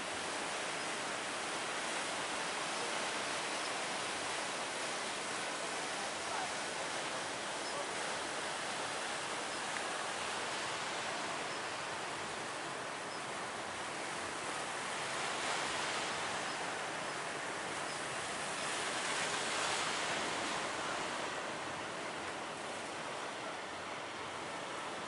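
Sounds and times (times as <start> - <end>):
ocean waves breaking: 5.0 - 24.6.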